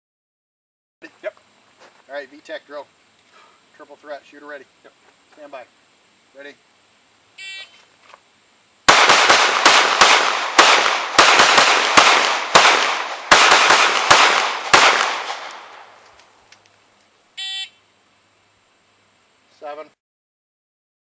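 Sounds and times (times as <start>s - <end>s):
shot timer beep: 7.4s - 7.7s, 17.4s - 17.8s
handgun shots: 8.9s - 15.8s.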